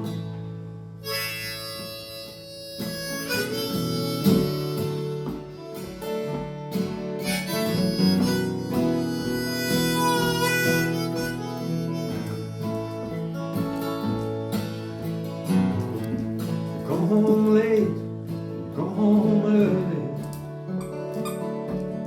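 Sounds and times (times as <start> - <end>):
harmonica melody: 0.0 - 16.9, 19.8 - 22.0
strummed acoustic guitar: 0.0 - 22.0.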